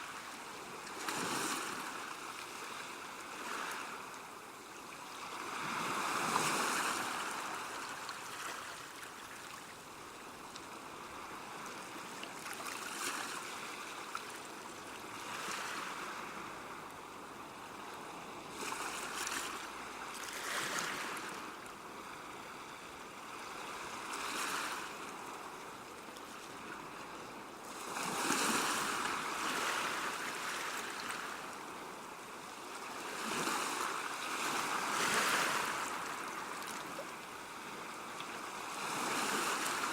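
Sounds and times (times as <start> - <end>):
sea waves washing onto shore: 32.8 - 39.9.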